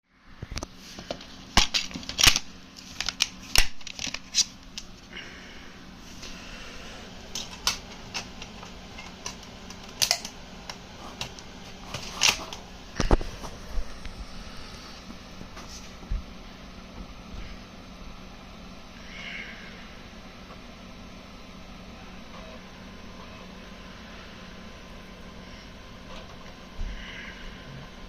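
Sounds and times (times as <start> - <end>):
low electrical hum: 0.1 - 28.0.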